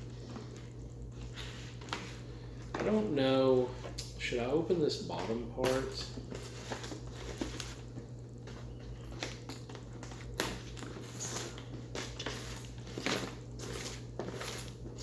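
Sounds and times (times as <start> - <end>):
steady low hum: 0.0 - 15.0
cardboard packaging rustling: 6.2 - 15.0.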